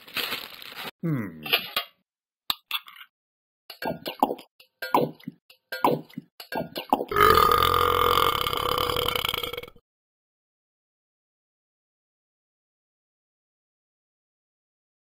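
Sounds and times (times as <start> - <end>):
person burping: 1.0 - 1.6, 7.0 - 9.8.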